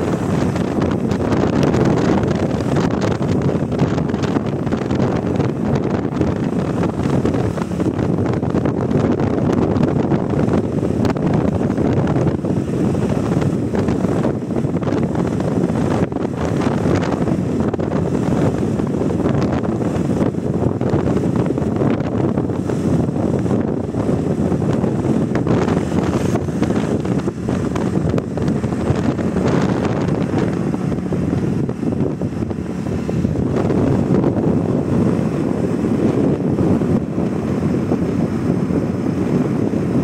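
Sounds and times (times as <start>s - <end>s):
wind buffeting microphone: 0.0s - 40.0s.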